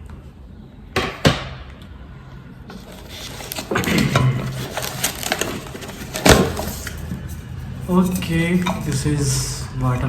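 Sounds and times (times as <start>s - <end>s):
packaging rustling and crinkling: 2.7s - 8.3s.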